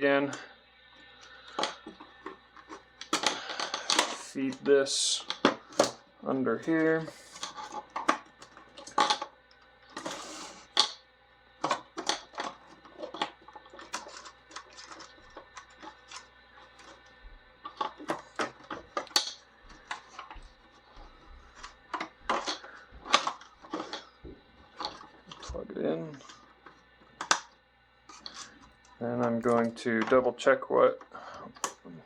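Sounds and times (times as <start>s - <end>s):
plastic parts clicking: 1.4s - 6.0s, 7.3s - 9.3s, 11.6s - 17.0s, 17.7s - 20.4s, 21.5s - 24.1s, 24.7s - 30.2s.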